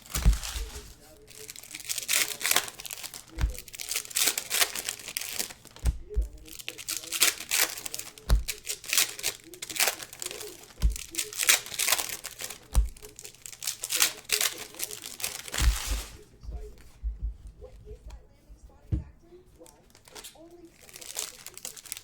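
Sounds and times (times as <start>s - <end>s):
soft low thumps: 0.0s - 1.0s, 3.4s - 3.8s, 5.8s - 6.6s, 10.8s - 11.2s, 15.6s - 19.5s
plastic wrapping crinkling: 0.0s - 22.0s.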